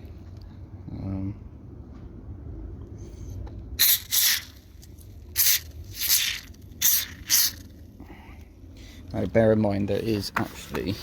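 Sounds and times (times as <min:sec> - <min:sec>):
aerosol spray hissing: 0:05.4 - 0:07.6.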